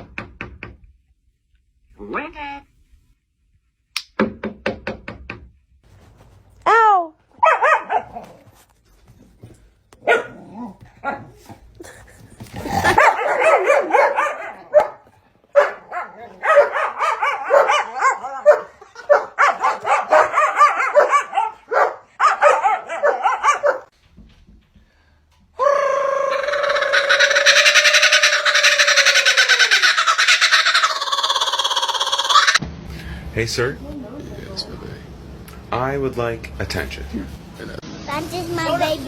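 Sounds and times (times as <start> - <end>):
dog barking: 7.4 - 8.4, 10.0 - 11.6, 12.6 - 23.9.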